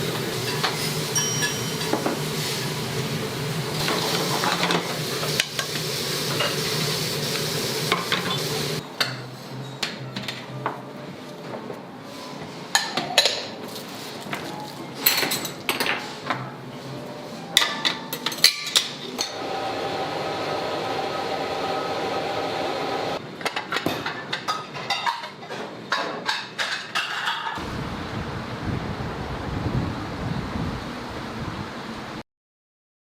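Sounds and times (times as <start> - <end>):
dishes and pans clinking: 0.4 - 2.2, 3.8 - 6.7, 7.9 - 10.5, 12.7 - 13.6, 14.3 - 16.4, 17.4 - 19.3, 23.4 - 27.6.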